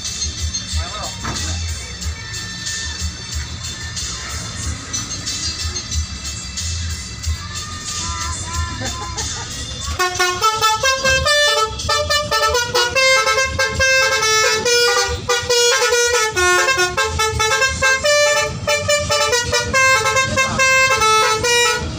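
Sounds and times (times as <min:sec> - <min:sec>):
multi-tone air horns playing tune: 0:09.8 - 0:21.9.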